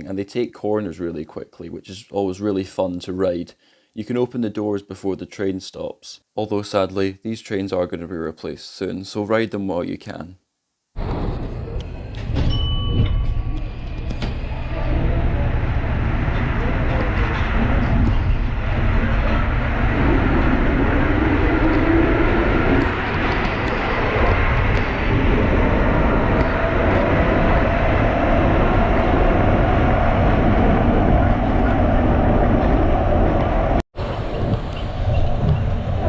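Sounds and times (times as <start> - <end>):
train rumble: 11.0 - 36.0
motor whine: 13.5 - 35.9.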